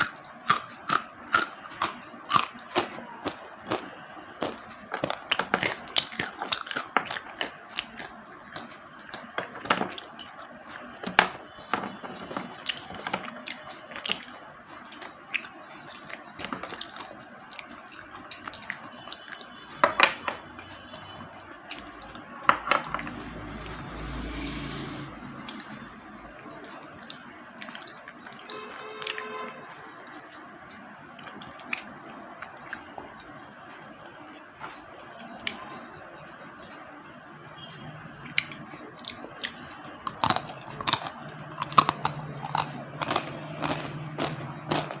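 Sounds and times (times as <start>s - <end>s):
slate pencils crunching: 40.1s - 45.0s.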